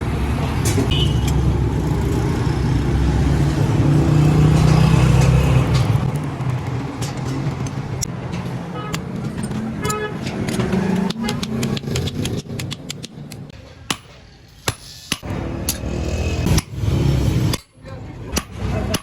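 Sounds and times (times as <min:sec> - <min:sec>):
hammer striking hot metal: 0:13.8 - 0:19.0
voices: 0:17.6 - 0:19.0.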